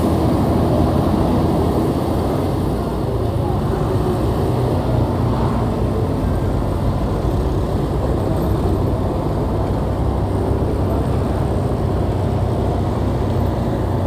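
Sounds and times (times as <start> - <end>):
surrounding traffic: 0.0 - 14.0.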